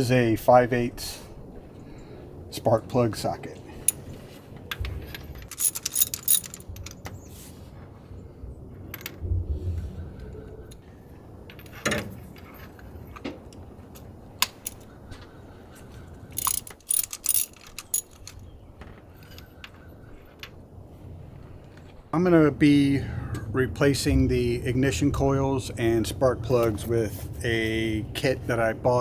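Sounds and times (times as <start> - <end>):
metallic clicks of hand tools: 5.5 - 7.0, 16.4 - 18.4.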